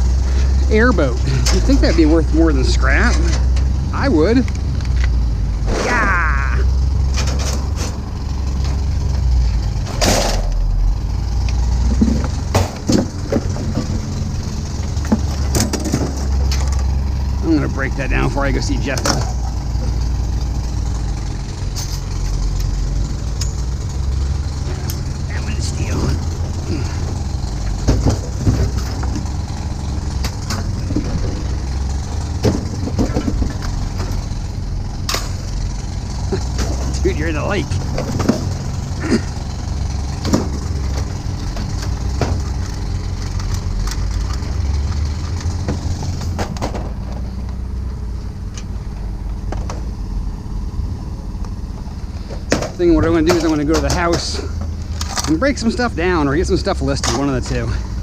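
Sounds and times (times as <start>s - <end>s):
vehicle engine rumbling: 0.0s - 58.0s
knocks and clunks: 7.0s - 10.8s, 11.4s - 49.9s, 52.2s - 55.5s.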